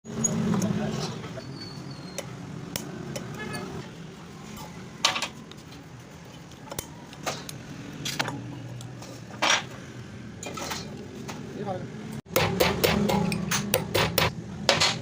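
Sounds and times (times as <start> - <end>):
metal tools clinking and knocking: 10.4 - 11.0.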